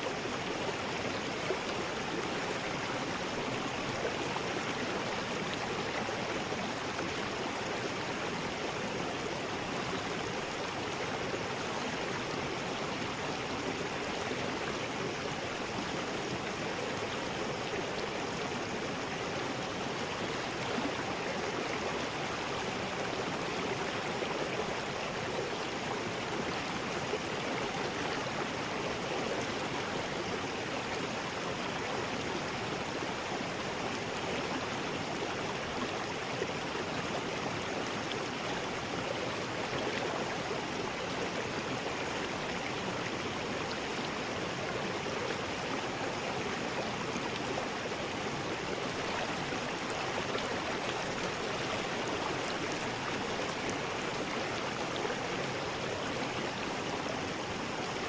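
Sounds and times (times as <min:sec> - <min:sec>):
water rushing over rocks: 0:43.7 - 0:58.0.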